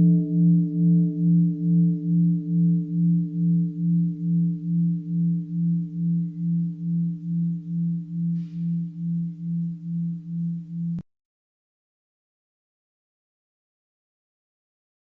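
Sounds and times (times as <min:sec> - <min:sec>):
meditation bell ringing: 0:00.0 - 0:11.0.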